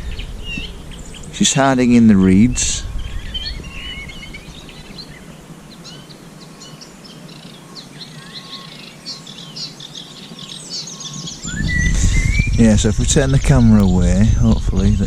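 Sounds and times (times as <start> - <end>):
small songbirds chirping: 0.0 - 15.0.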